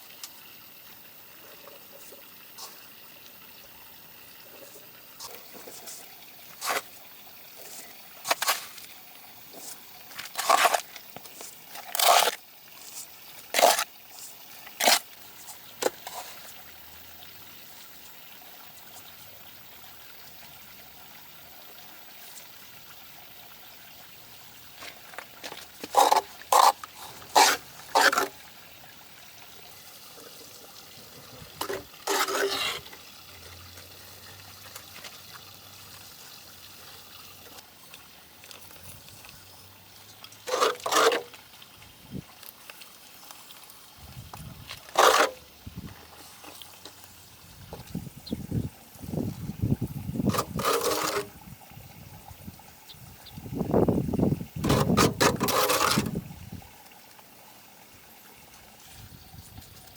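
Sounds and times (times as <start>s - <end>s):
water splashes: 20.6s - 59.9s.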